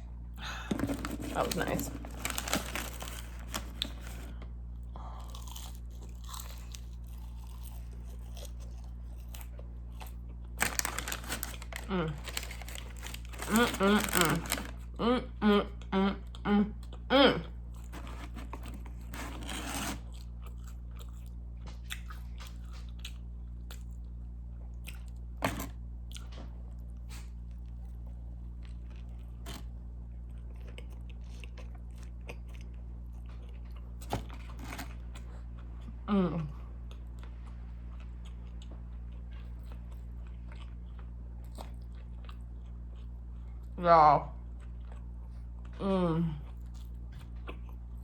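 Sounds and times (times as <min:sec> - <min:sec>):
steady low hum: 0:00.0 - 0:48.0
person chewing food: 0:00.4 - 0:15.0, 0:16.3 - 0:43.8, 0:44.4 - 0:48.0.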